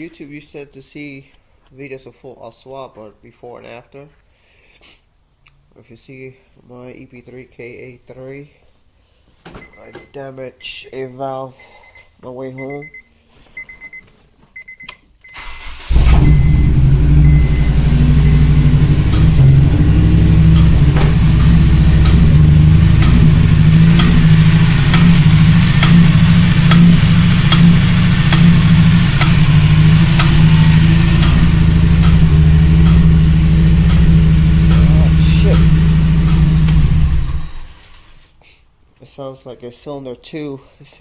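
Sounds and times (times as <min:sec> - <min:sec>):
engine ticking: 0:15.9 - 0:37.7
car engine running rough: 0:15.9 - 0:37.8.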